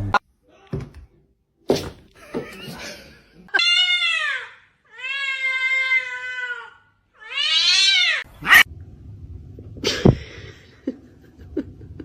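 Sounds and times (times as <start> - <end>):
cat meowing: 3.6 - 8.6.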